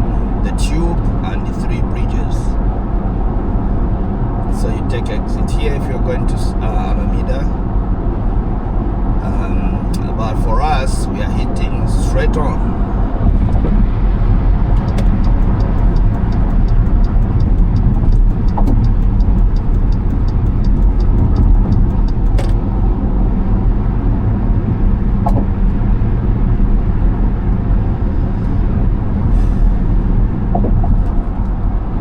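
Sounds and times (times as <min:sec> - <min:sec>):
car road and engine rumble: 0:00.0 - 0:32.0
faint regular ticking: 0:14.7 - 0:22.6.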